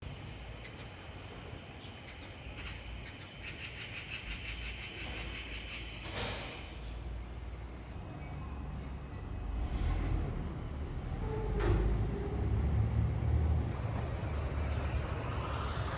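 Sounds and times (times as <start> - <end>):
low vehicle rumble: 8.0 - 15.9.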